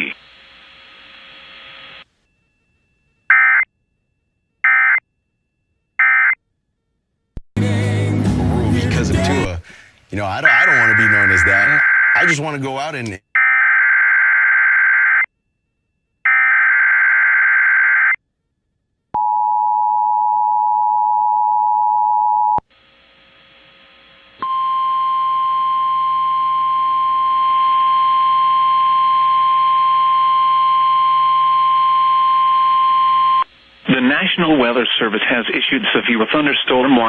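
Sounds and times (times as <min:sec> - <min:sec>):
faint static: 0:00.0 - 0:07.4, 0:22.6 - 0:37.0
steady alarm tone: 0:02.0 - 0:06.4, 0:10.4 - 0:12.5, 0:24.4 - 0:33.4
screeching data burst: 0:10.4 - 0:12.3
two-tone attention signal: 0:10.5 - 0:12.2.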